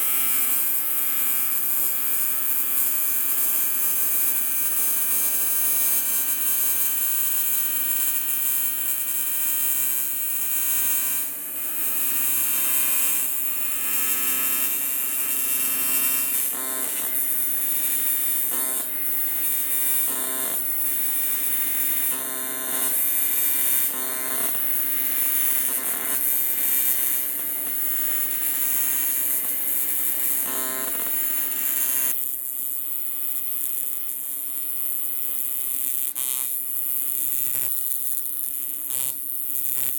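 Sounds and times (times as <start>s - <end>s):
welding arc buzzing: 0.0s - 32.2s, 33.1s - 39.9s.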